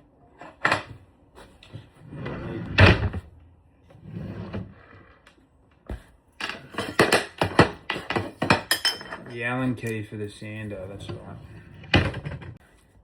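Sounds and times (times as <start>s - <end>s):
knocks and bangs of handling: 5.9s - 9.3s.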